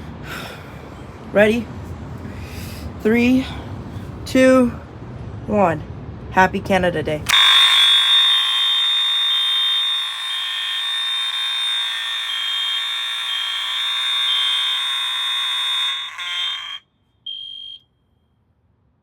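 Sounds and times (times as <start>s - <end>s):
fire alarm tone: 7.3s - 17.8s
short beep: 7.3s - 17.8s.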